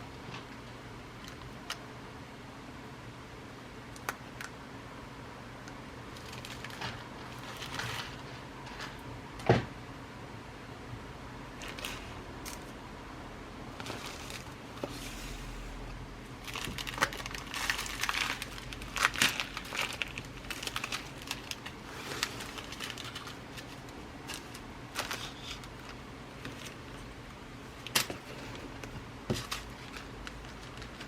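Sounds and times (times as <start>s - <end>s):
beads and packaging rustling: 6.2s - 9.0s, 13.8s - 15.4s, 16.4s - 27.1s, 27.7s - 31.0s.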